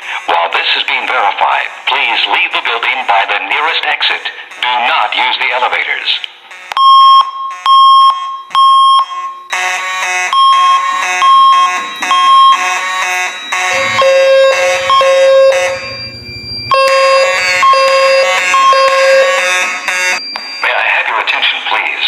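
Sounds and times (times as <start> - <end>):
fire alarm beeping: 6.4 - 21.7
low pulsing tone: 13.5 - 19.6.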